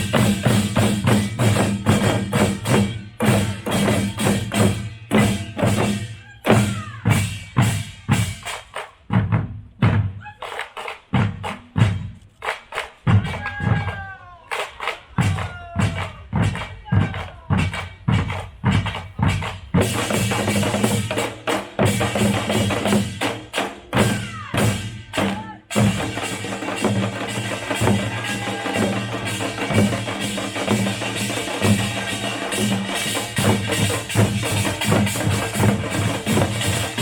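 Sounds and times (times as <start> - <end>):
percussion band drumming: 0.0 - 37.0.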